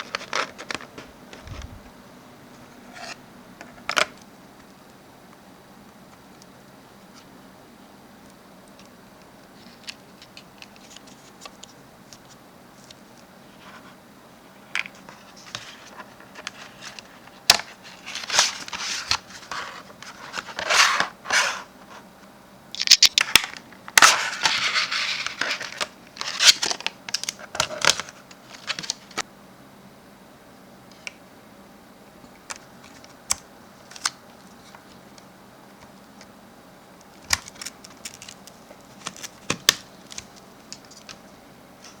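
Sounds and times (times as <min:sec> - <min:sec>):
packaging crinkling and tearing: 0:22.8 - 0:29.2, 0:37.1 - 0:41.1.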